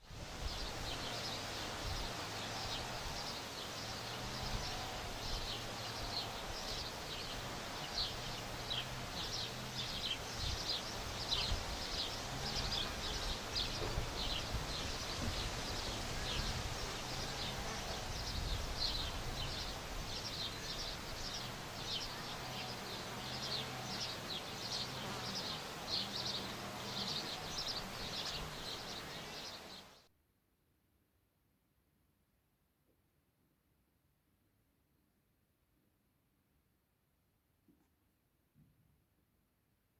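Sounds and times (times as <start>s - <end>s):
small birds chirping: 0.3s - 30.0s.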